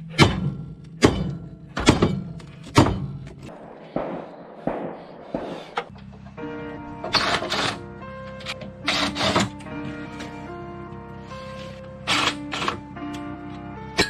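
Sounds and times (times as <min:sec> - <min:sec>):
heavy thumps: 0:00.1 - 0:06.2.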